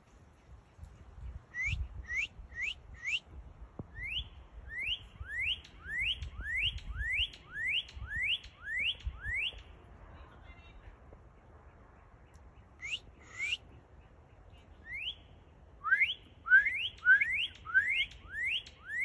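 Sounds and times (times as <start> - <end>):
bird singing rising whistles: 1.6 - 3.2, 3.9 - 9.6, 12.8 - 13.6, 14.8 - 15.2, 15.8 - 19.0.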